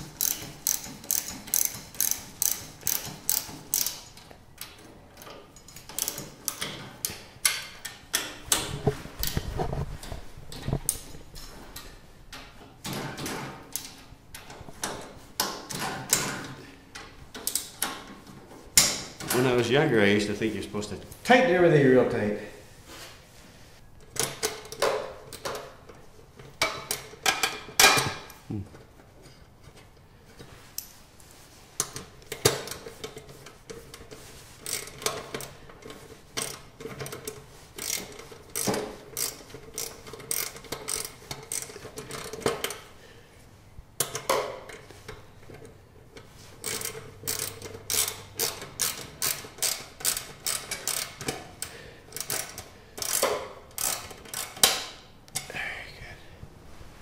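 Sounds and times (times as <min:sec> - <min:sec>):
ratchet wrench clicking: 0:00.0 - 0:04.2, 0:05.6 - 0:08.3, 0:34.6 - 0:35.6, 0:36.4 - 0:42.8, 0:46.6 - 0:54.9.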